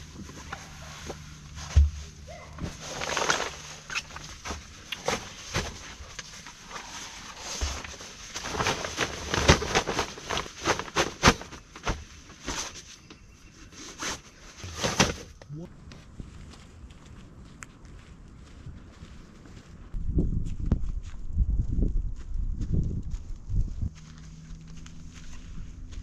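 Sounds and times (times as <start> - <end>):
rustling: 0.0 - 15.4.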